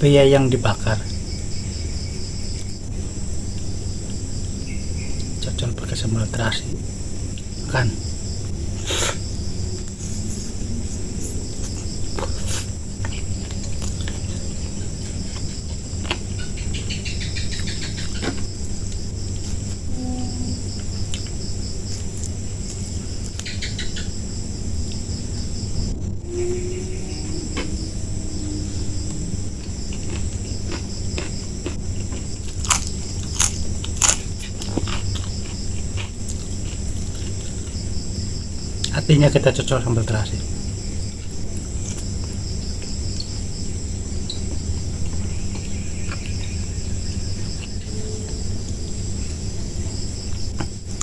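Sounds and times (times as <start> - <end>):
crickets chirring: 0.0 - 51.0
high insect trill: 0.0 - 51.0
chewing: 11.6 - 16.7, 29.6 - 37.8, 45.0 - 48.0
sharp crunches: 29.5 - 37.6.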